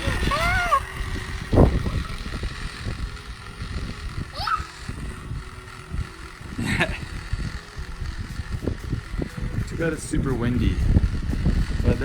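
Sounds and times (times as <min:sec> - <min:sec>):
fan motor humming: 0:00.0 - 0:12.0
wind buffeting microphone: 0:00.0 - 0:12.0
high-pitched voice: 0:04.3 - 0:04.9.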